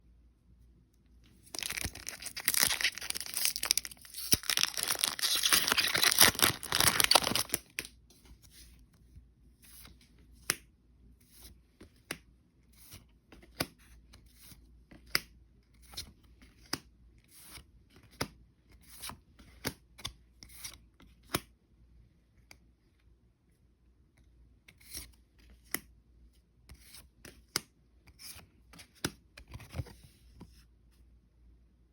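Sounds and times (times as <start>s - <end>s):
foil wrapper tearing and crackling: 1.5s - 7.7s.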